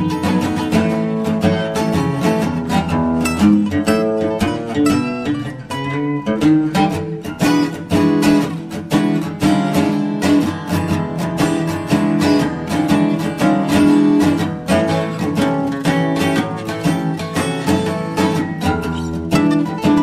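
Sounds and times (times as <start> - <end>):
acoustic guitar music: 0.0 - 20.0.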